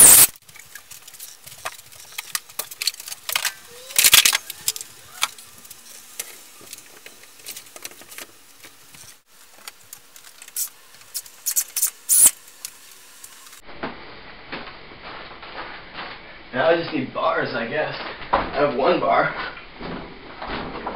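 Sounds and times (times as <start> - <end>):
parts clicking and scraping: 0.0 - 13.6.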